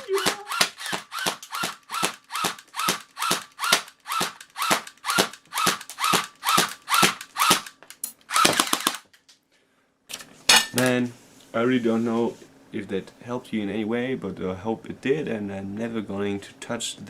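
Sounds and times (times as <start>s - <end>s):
electric airsoft gun firing: 0.0s - 9.1s.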